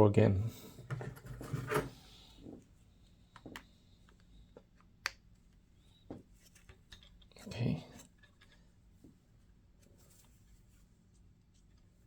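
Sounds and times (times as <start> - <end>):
faint clicks and taps on plastic: 3.3 - 7.3.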